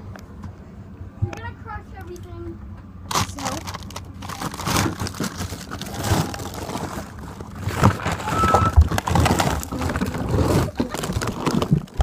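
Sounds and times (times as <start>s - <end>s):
frozen food packages crunching: 3.1s - 12.0s.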